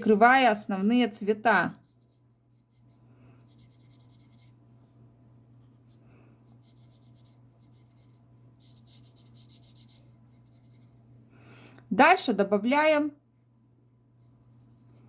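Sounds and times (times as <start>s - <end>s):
low steady hum: 0.0s - 15.0s
brush strokes on paper: 1.8s - 11.2s, 14.2s - 15.0s.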